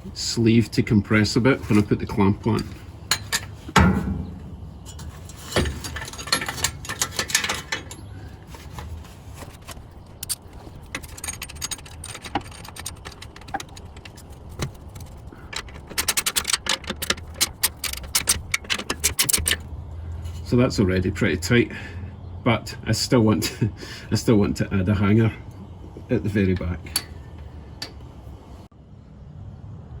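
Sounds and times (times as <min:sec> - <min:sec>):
metal clamp clinking: 0:03.1 - 0:08.8, 0:09.4 - 0:19.7
ratchet clicking: 0:09.6 - 0:19.7.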